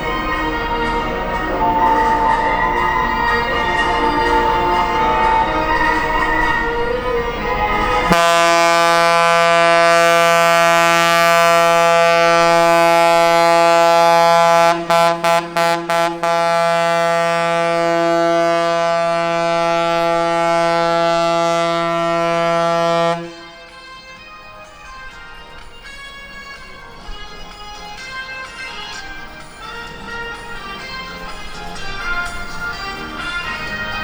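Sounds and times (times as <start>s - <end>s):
ship's horn blast: 0.0s - 34.0s.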